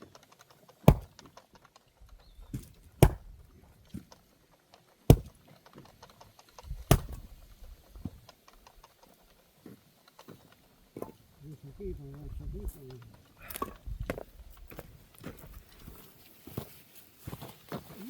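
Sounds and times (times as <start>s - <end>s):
axe chopping firewood: 0.7s - 1.4s, 2.5s - 4.2s, 5.1s - 6.0s, 6.6s - 8.3s, 10.9s - 11.2s
light knocks of wood: 5.1s - 5.9s.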